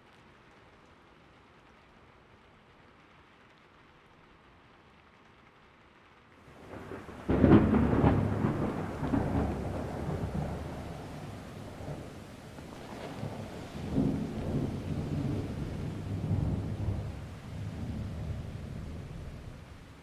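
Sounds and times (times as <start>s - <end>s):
rain falling steadily: 0.0s - 20.0s
thunder crack and rumble: 6.5s - 20.0s.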